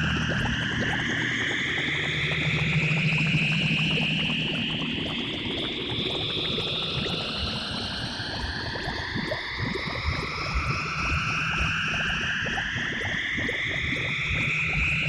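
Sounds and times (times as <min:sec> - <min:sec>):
crackling bubbling texture: 0:00.0 - 0:15.0.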